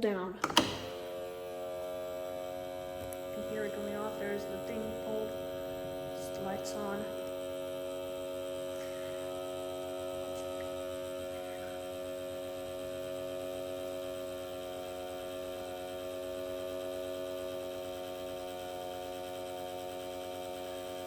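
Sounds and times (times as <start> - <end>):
alarm signal steady hum: 2.2 - 10.2.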